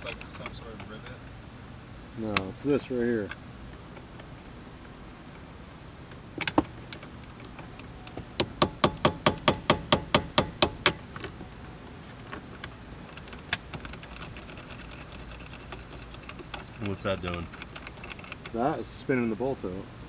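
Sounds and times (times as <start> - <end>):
metal-on-metal taps: 8.1 - 11.3
single knocks: 8.2 - 11.3.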